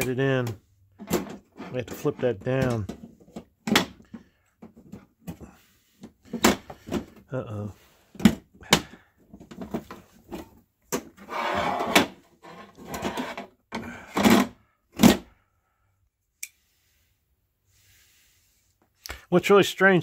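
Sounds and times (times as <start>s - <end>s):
metal scrape: 11.2s - 13.5s.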